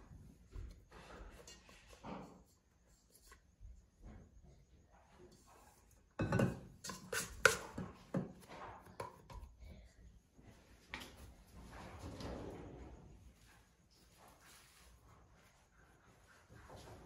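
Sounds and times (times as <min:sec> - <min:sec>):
objects knocking and clattering: 0:06.1 - 0:09.6.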